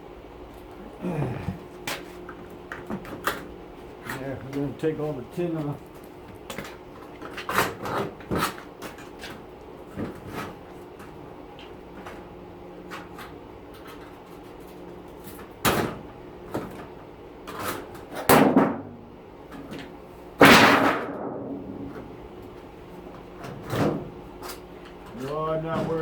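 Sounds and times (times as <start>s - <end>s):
sheet metal panels banging: 20.4s - 22.3s.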